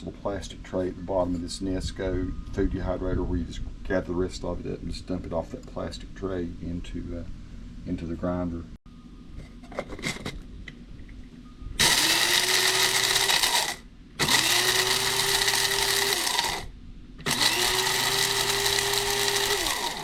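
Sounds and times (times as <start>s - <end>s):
electric coffee grinder grinding: 11.8s - 20.0s.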